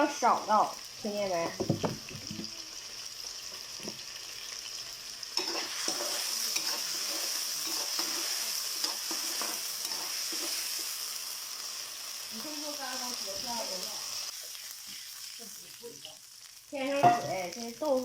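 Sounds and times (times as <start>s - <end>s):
potatoes sizzling in oil: 0.0s - 18.0s
spatula scraping a pan: 5.4s - 11.0s.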